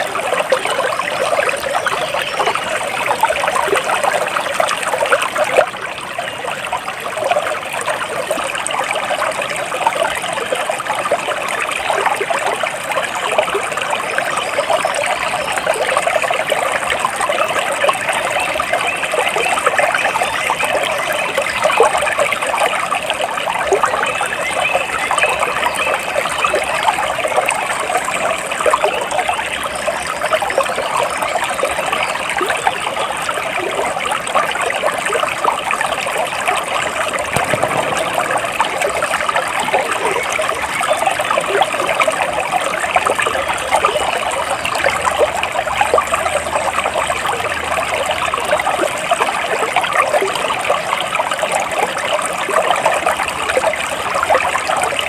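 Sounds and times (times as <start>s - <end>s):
stream water trickling and babbling: 0.0s - 55.0s.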